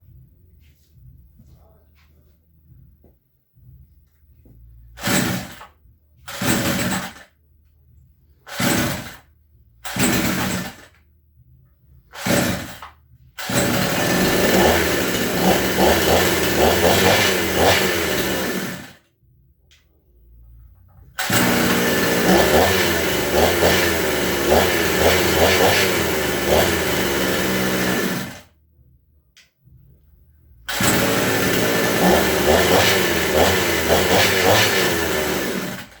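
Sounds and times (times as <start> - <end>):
chainsaw engine running: 5.0 - 5.6, 6.3 - 7.2, 8.5 - 9.2, 9.8 - 10.9, 12.1 - 12.8, 13.4 - 19.0, 21.2 - 28.5, 30.7 - 36.0.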